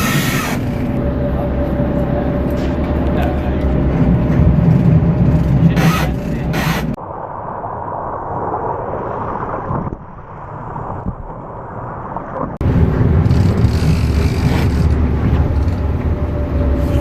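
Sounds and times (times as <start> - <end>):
boat engine running: 0.0 - 7.0, 12.6 - 17.0
deep rumble: 0.0 - 17.0
wind rushing over microphone: 0.0 - 17.0.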